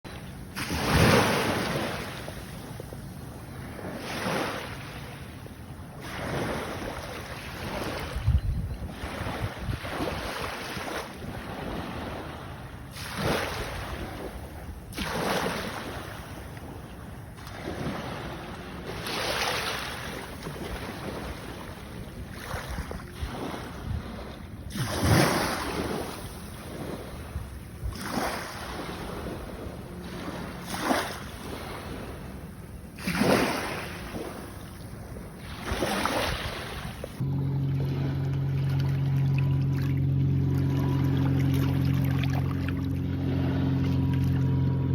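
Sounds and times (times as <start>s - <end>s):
ocean waves washing ashore: 0.1s - 44.9s
wind buffeting microphone: 1.1s - 39.6s.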